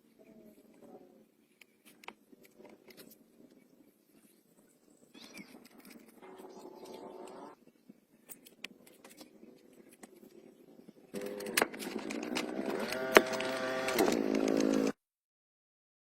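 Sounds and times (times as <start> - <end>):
motor humming: 11.2 - 15.0
sharp clicks: 11.2 - 15.0.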